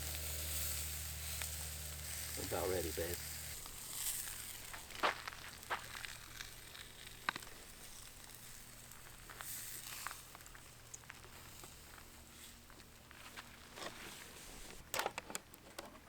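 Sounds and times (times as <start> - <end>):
food sizzling in a pan: 0.0 - 10.8.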